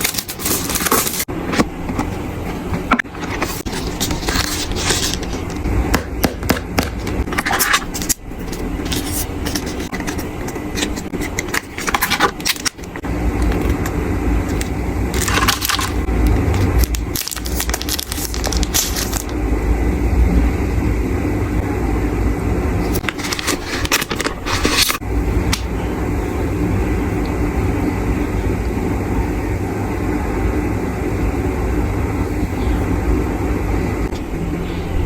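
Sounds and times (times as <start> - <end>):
packaging rustling and crinkling: 0.0 - 5.6, 7.0 - 13.8, 14.5 - 19.3, 22.9 - 25.0
steady low rumble: 1.2 - 35.0.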